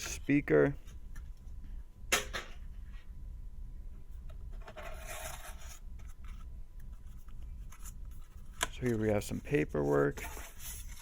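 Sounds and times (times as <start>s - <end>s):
cardboard and paper handling: 4.6s - 11.0s.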